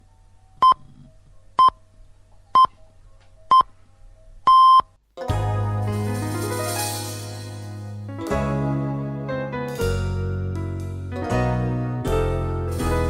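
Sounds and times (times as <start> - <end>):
piano music: 5.1 - 13.0.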